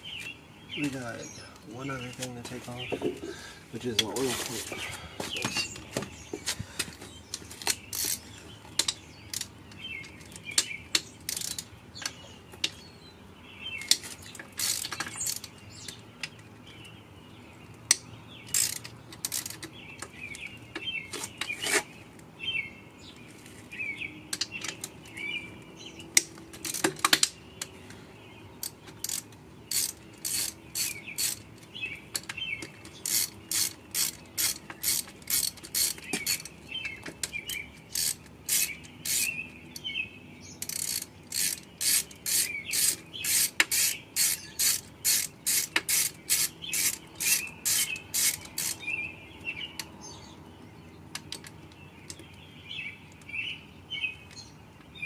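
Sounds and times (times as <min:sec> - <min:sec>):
hand ratchet clicking: 0:07.6 - 0:08.2, 0:10.1 - 0:11.7, 0:13.8 - 0:15.5, 0:18.5 - 0:20.2, 0:28.6 - 0:31.5, 0:32.1 - 0:39.9, 0:40.6 - 0:48.8.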